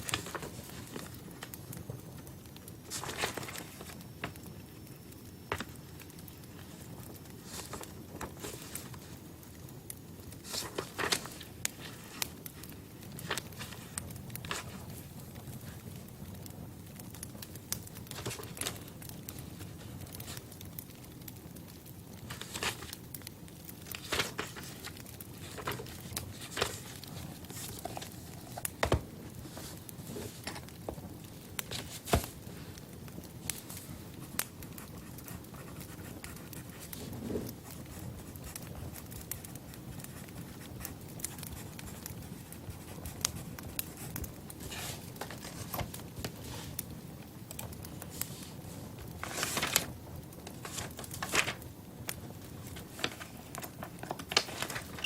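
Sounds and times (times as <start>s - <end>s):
rustling: 0.0s - 1.5s, 2.9s - 4.0s, 6.6s - 9.2s, 10.3s - 15.0s, 23.8s - 31.0s, 31.6s - 32.8s, 48.0s - 51.6s, 52.6s - 55.0s
clicks and crackles: 0.0s - 55.0s
low steady background noise: 0.0s - 55.0s.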